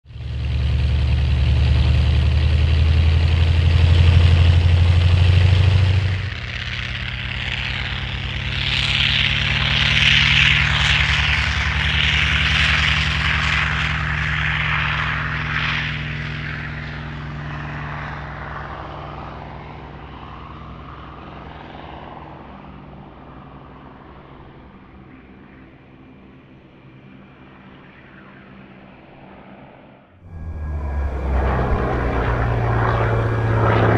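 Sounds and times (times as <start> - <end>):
model plane engine running: 0.1 - 23.0, 30.3 - 33.9
propeller hiss: 30.3 - 33.9.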